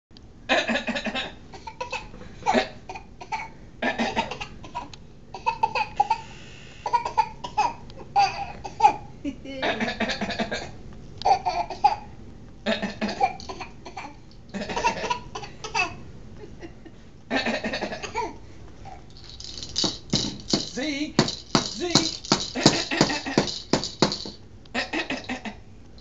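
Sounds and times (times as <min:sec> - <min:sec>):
baby coughing: 0:01.6 - 0:06.2, 0:06.8 - 0:09.1, 0:10.4 - 0:12.1, 0:12.9 - 0:16.0, 0:17.6 - 0:18.4
laughter: 0:09.2 - 0:10.6, 0:16.4 - 0:18.0.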